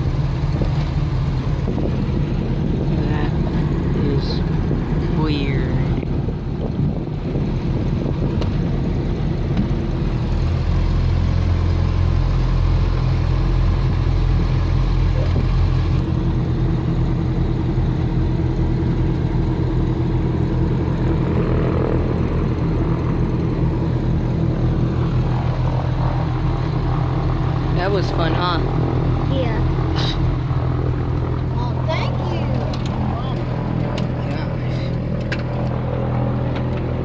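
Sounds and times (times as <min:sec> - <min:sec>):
vehicle engine drone: 0:00.0 - 0:37.0.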